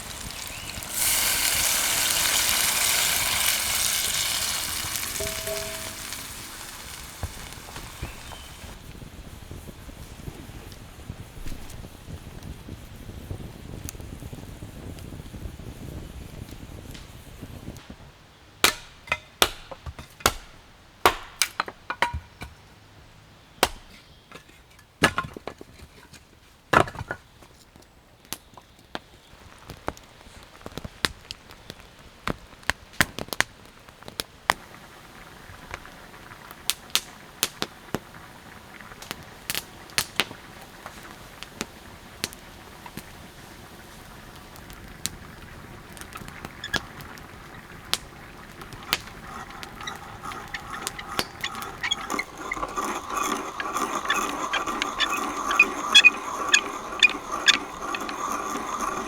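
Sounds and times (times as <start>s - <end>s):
faint steady hiss: 0.0s - 23.6s, 25.6s - 59.0s
sharp cracks and knocks: 18.6s - 22.6s, 23.6s - 25.6s.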